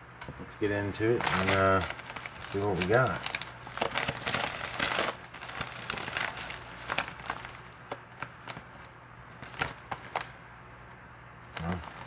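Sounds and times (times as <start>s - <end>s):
packaging rustling and crinkling: 1.2s - 10.4s, 11.5s - 12.0s
sharp packaging crackles: 1.2s - 10.4s, 11.5s - 12.0s.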